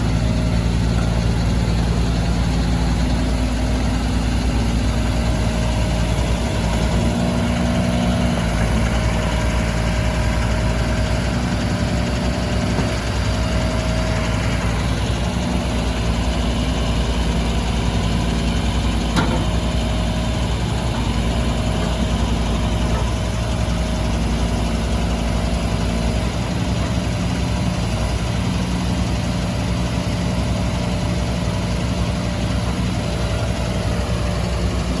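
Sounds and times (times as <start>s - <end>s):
excavator engine idling: 0.0s - 35.0s.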